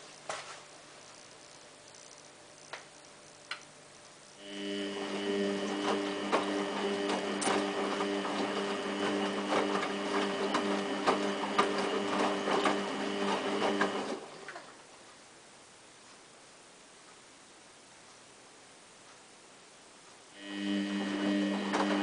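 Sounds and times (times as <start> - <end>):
washing machine hum: 0.0 - 15.9, 20.3 - 22.0.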